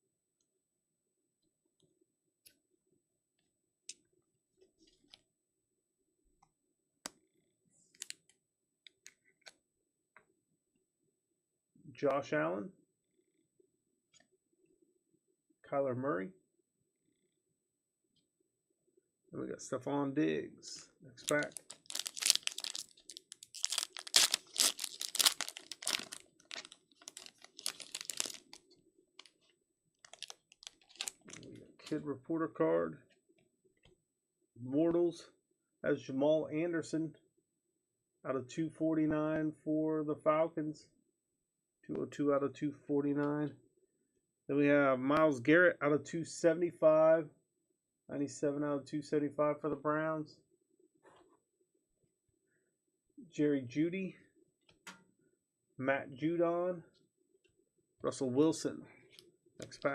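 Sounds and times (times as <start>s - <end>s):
foil wrapper crackling: 21.2s - 28.6s, 30.1s - 31.4s.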